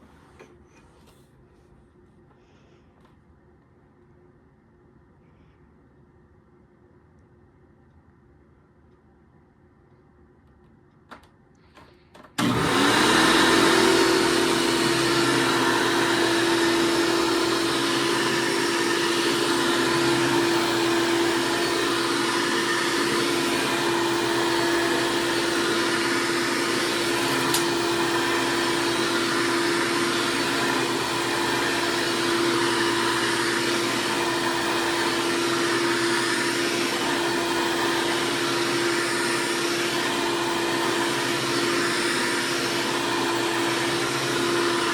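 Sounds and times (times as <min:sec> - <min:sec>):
vacuum cleaner motor whining: 0:12.3 - 0:44.9.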